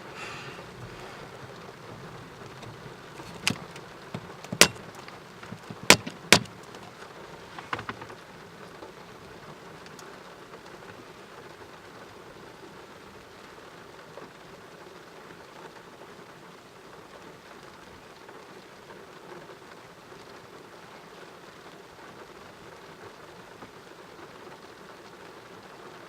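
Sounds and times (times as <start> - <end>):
heavy rain hiss: 0.0 - 26.0
sharp taps: 3.4 - 6.8.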